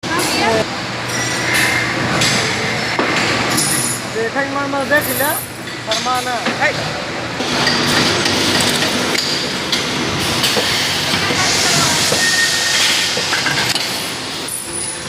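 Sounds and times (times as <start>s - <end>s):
machinery clattering and knocking: 4.8s - 15.0s.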